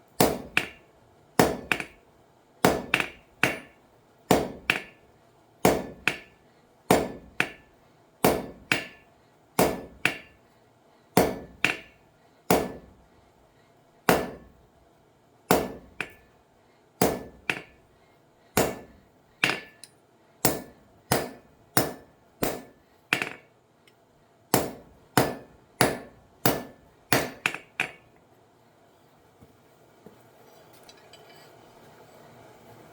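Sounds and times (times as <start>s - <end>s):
hammer striking metal on an anvil: 0.2s - 2.0s, 2.6s - 10.4s, 11.2s - 13.0s, 14.1s - 14.6s, 15.5s - 16.3s, 17.0s - 17.8s, 18.6s - 23.5s, 24.5s - 28.1s.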